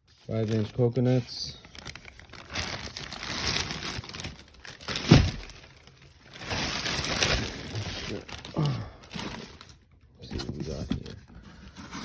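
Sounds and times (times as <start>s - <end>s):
packaging rustling and crinkling: 0.0s - 12.0s.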